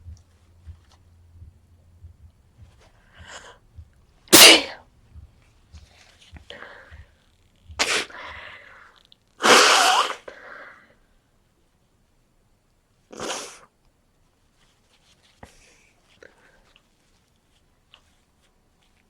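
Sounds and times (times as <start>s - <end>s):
person sneezing: 4.3s - 4.8s, 7.8s - 8.4s, 9.4s - 10.3s, 13.2s - 13.6s.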